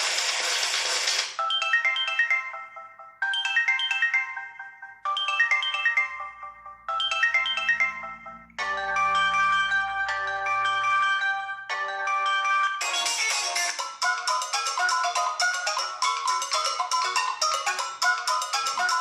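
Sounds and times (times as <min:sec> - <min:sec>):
phone ringtone melody: 0:01.4 - 0:19.0.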